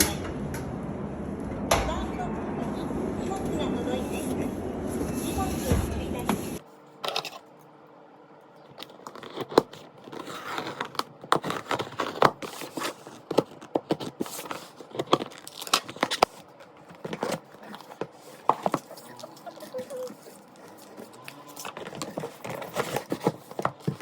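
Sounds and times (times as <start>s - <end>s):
packaging tearing and crinkling: 8.8s - 24.0s.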